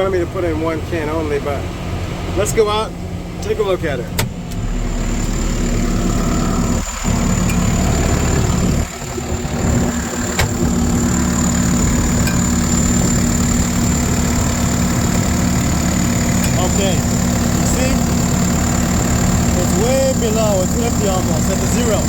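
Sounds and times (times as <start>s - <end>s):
diesel engine idling: 0.0s - 22.0s
thin high whine: 4.7s - 14.5s.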